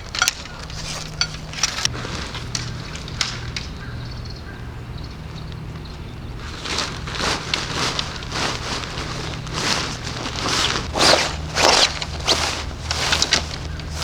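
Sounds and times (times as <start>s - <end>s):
steady low hum: 0.0s - 14.0s
rustling and scuffing swishes: 6.4s - 14.0s.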